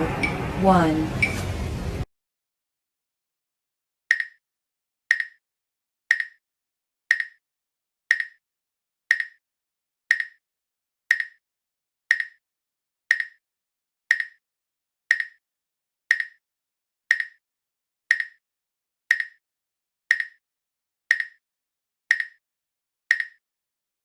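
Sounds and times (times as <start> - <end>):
timer ticking with bright clinks: 4.1 - 4.4, 5.1 - 5.4, 6.1 - 6.4, 7.1 - 7.4, 8.1 - 8.4, 9.1 - 9.4, 10.1 - 10.4, 11.1 - 11.4, 12.1 - 12.4, 13.1 - 13.4, 14.1 - 14.4, 15.1 - 15.4, 16.1 - 16.4, 17.1 - 17.4, 18.1 - 18.4, 19.1 - 19.4, 20.1 - 20.4, 21.1 - 21.4, 22.1 - 22.4, 23.1 - 23.4.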